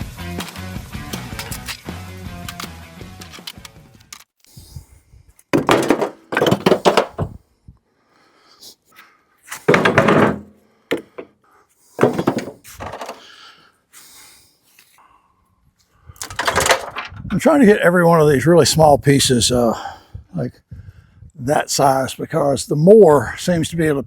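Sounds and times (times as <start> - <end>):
concrete chunks thunking: 5.5 - 7.4, 9.6 - 11.3, 12.0 - 13.2, 16.2 - 17.2.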